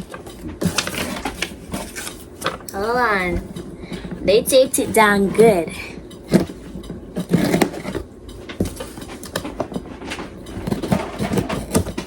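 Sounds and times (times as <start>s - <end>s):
cardboard scraping and clicks: 0.2s - 2.6s, 6.3s - 12.0s.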